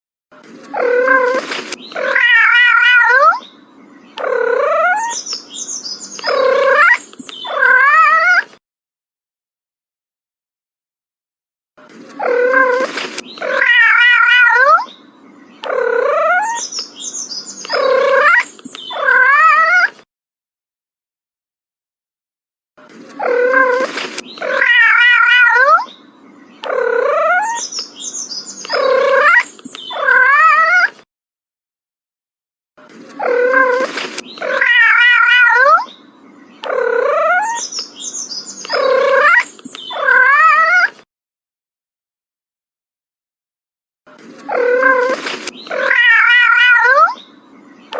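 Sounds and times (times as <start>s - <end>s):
cat meowing: 0.7s - 3.5s, 6.3s - 8.5s, 12.2s - 15.0s, 23.2s - 26.0s, 33.2s - 36.0s, 38.8s - 41.0s, 44.5s - 47.2s.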